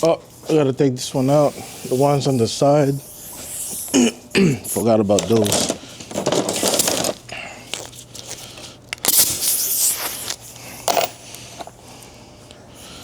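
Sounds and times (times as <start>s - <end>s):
tools clattering and scraping: 4.8s - 9.2s, 10.2s - 11.8s.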